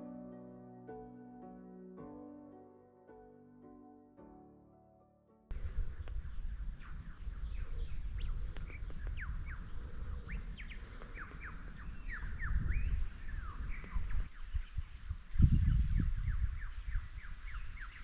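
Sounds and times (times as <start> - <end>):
low rumble: 5.5 - 14.3
birds chirping and whistling: 5.5 - 18.0.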